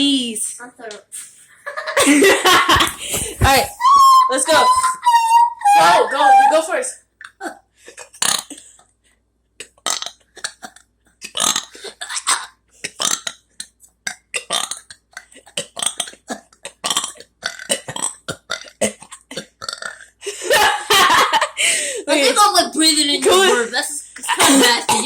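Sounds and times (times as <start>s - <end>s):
person burping: 8.1s - 8.6s, 9.6s - 13.5s, 14.1s - 20.2s, 24.4s - 25.0s.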